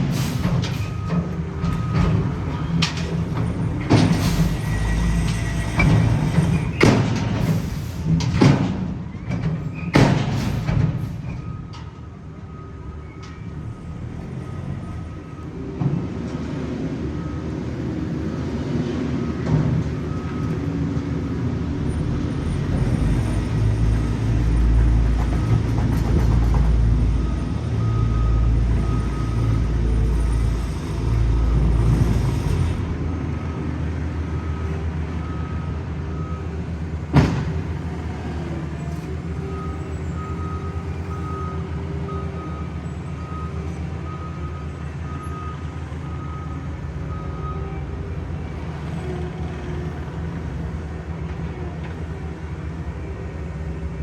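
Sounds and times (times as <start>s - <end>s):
paving machine engines rumbling: 0.0s - 54.0s
reversing alarm beeping: 0.8s - 2.5s, 27.2s - 31.8s, 34.3s - 36.6s, 39.3s - 48.5s.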